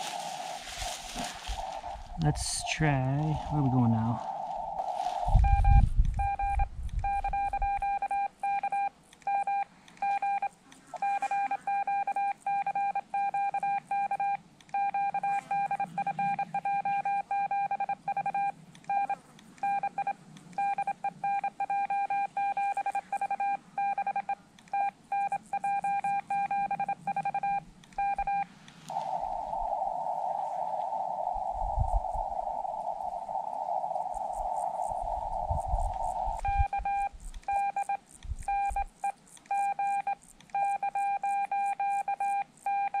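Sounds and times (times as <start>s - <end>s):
radio receiver hiss: 0.0s - 7.0s, 24.6s - 42.7s
morse code beeps: 5.4s - 28.5s, 35.5s - 43.0s.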